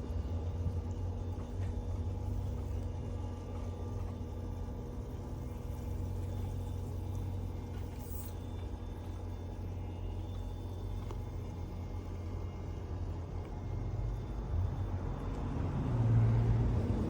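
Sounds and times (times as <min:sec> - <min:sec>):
electric motor humming: 0:00.0 - 0:17.0.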